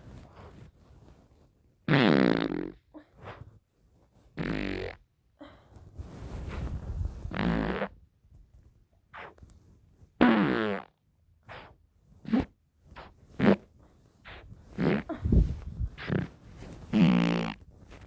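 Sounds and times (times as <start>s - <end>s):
pitched fart sounds: 1.9s - 3.4s, 4.4s - 5.0s, 7.3s - 8.0s, 9.1s - 9.4s, 10.2s - 17.7s.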